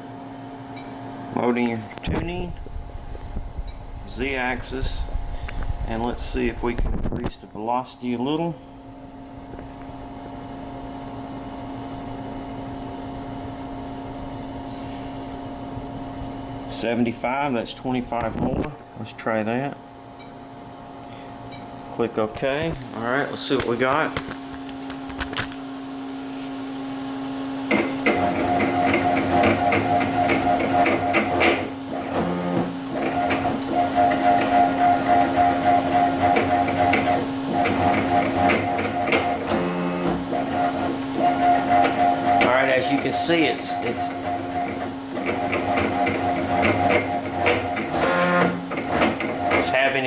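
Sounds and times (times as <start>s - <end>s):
steady drive hum: 0.0s - 50.0s
stepper motor hum: 25.9s - 50.0s.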